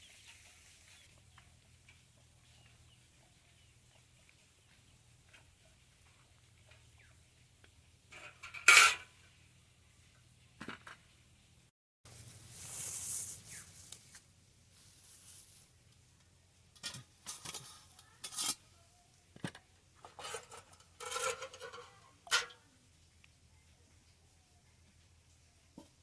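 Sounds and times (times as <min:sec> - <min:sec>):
hissing rustle: 0:12.1 - 0:15.8.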